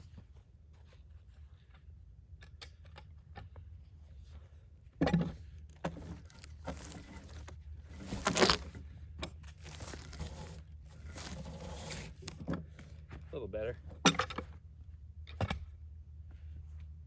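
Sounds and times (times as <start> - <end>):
log creaking and splintering: 5.7 - 12.6.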